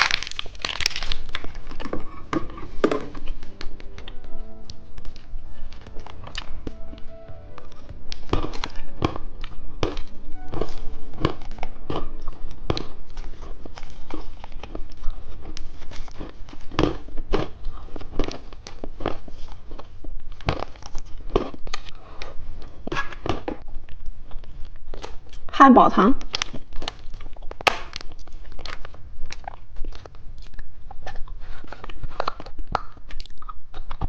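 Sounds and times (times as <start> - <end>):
crunching: 0.0 - 25.4
candy wrappers crinkling: 0.0 - 25.5, 26.2 - 34.0.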